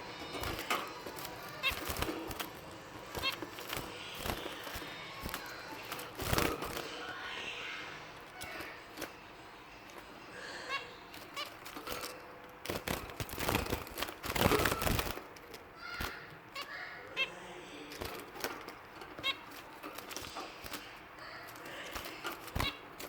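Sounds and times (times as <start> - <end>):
finches chirping: 0.0 - 23.0
clicks and rustling: 17.9 - 23.0.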